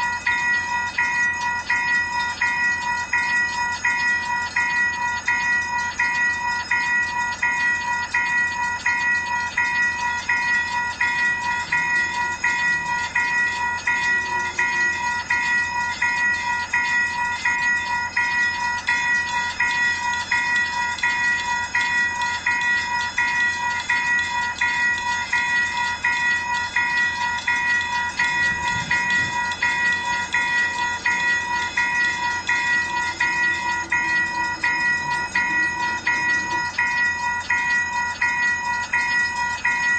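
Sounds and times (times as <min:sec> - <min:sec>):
railroad crossing bell ringing: 0:00.0 - 0:39.9.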